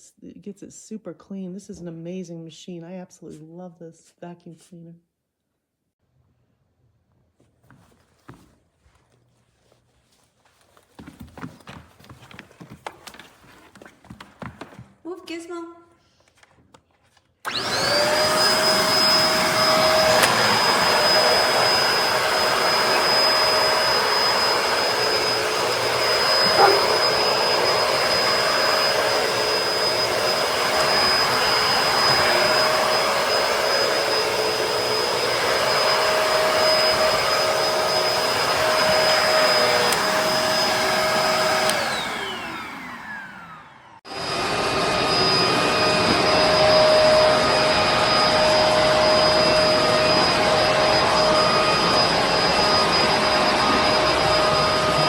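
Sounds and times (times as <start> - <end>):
vacuum cleaner motor whine: 17.4 - 55.0.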